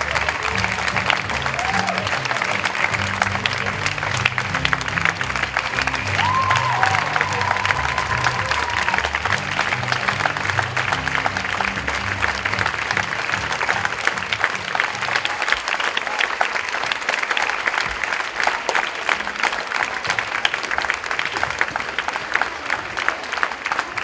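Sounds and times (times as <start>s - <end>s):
low music: 0.0s - 15.0s
audience applauding: 0.0s - 24.0s.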